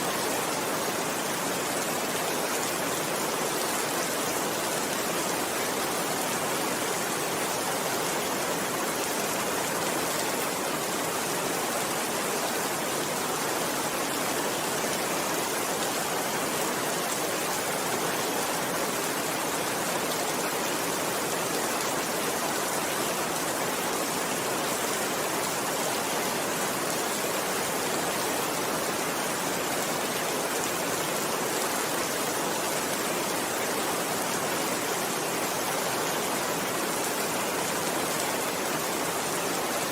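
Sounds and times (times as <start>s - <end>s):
steady rainfall: 0.0s - 39.9s.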